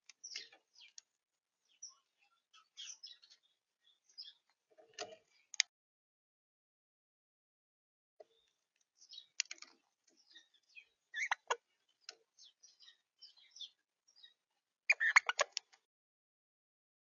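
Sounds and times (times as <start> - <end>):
birds chirping softly: 0.0 - 5.7, 8.2 - 15.9
sharp bird clicks: 9.1 - 10.4, 11.2 - 12.2, 14.9 - 15.8.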